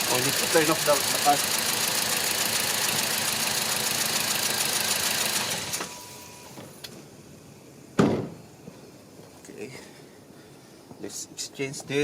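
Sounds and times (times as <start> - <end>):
car engine idling: 0.0 - 7.9.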